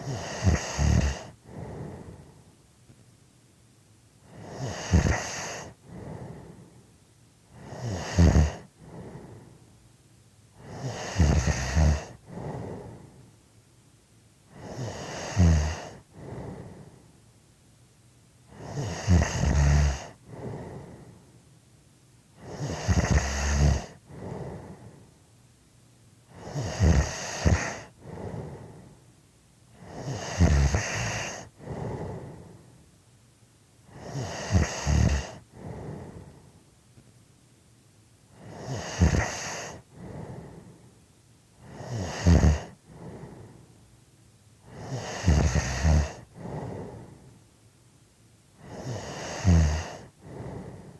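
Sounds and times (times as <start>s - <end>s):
person snoring: 0.0s - 2.2s, 4.3s - 6.5s, 7.6s - 9.3s, 10.6s - 13.0s, 14.5s - 16.8s, 18.5s - 21.0s, 22.4s - 24.8s, 26.3s - 28.8s, 29.8s - 32.4s, 33.9s - 36.4s, 38.4s - 40.6s, 41.6s - 43.5s, 44.7s - 47.1s, 48.6s - 50.9s
soft breath: 1.0s - 2.6s, 5.4s - 6.9s, 8.6s - 9.7s, 12.1s - 13.4s, 15.8s - 17.2s, 20.0s - 21.4s, 23.8s - 25.2s, 27.4s - 29.0s, 29.8s - 32.8s, 33.9s - 36.7s, 38.4s - 41.0s, 42.6s - 43.8s, 44.6s - 47.4s, 48.6s - 50.9s.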